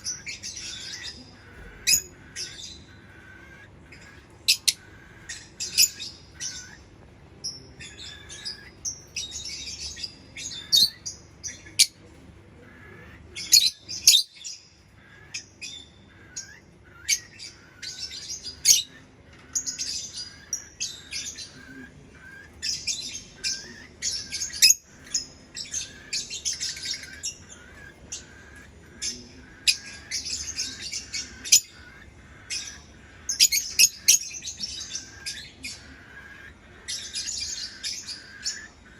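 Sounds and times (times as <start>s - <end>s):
lovebirds chirping: 0.0s - 38.9s.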